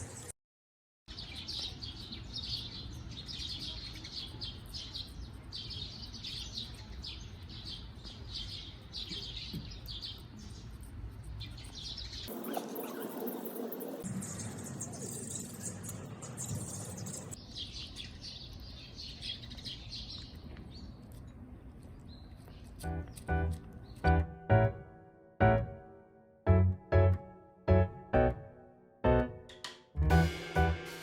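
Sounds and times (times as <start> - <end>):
small birds chirping: 1.1 - 24.8.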